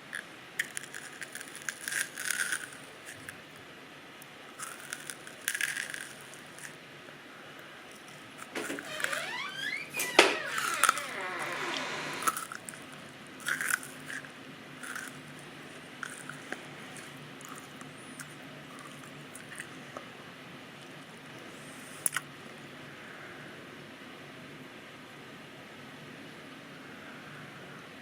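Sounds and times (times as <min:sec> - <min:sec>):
chewing and crunching hard candy: 0:00.0 - 0:03.6, 0:04.5 - 0:06.8, 0:12.2 - 0:20.1, 0:20.8 - 0:22.3
squeaky sliding sounds: 0:08.5 - 0:12.4
mouth clicks and smacks: 0:22.0 - 0:22.3.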